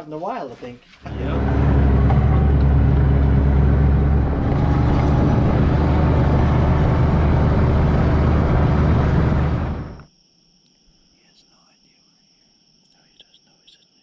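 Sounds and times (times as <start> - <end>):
road and wind noise: 1.0 - 10.0
vehicle engine drone: 1.0 - 10.0.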